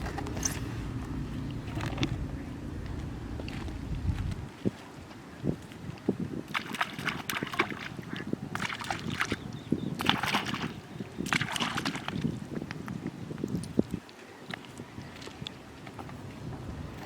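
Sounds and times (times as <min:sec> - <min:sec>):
water splashing and sloshing: 0:00.0 - 0:17.0.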